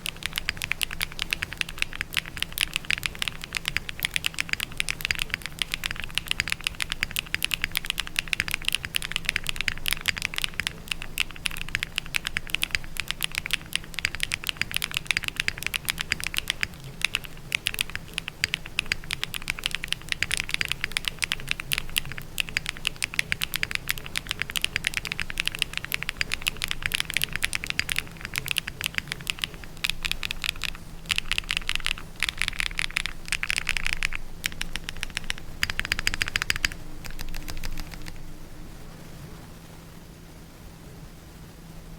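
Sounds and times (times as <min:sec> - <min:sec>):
typing on mechanical keyboard: 0:00.0 - 0:38.4.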